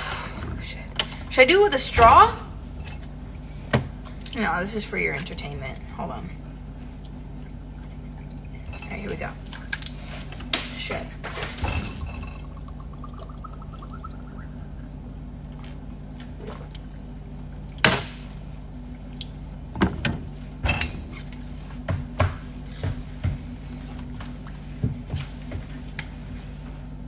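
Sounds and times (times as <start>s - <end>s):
steady low hum: 0.0s - 27.0s
liquid gurgling into a glass: 12.0s - 15.0s.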